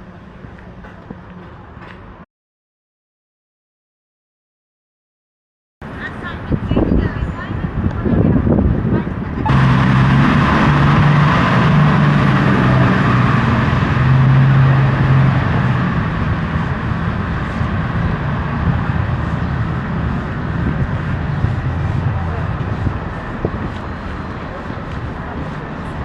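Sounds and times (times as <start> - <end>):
tyre and traffic noise: 0.0 - 2.2, 5.8 - 26.0
heavy vehicle engine hum: 5.8 - 26.0.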